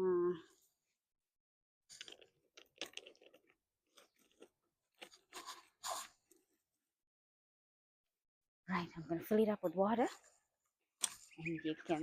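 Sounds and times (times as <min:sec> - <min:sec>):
faint crunching and scraping: 0:01.9 - 0:06.6.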